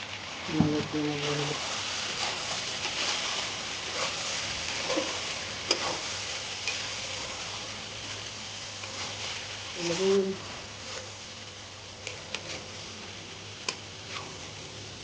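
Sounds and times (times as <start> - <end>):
curry sizzling in hot oil: 0.0 - 15.0
spoon clicking against pan: 13.6 - 13.8.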